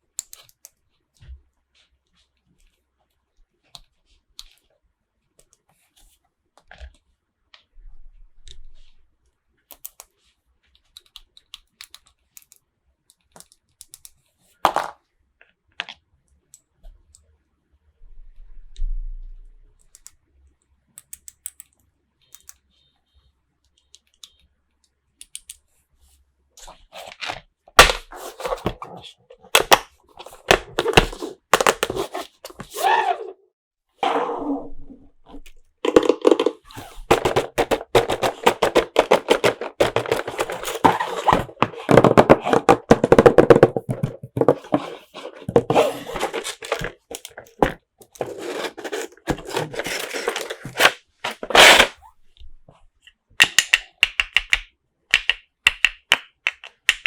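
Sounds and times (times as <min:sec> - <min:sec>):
plastic toy parts clicking: 0:21.0 - 0:22.6, 0:53.4 - 0:57.0
packaging crinkling and tearing: 0:27.0 - 0:32.8, 0:35.9 - 0:52.0.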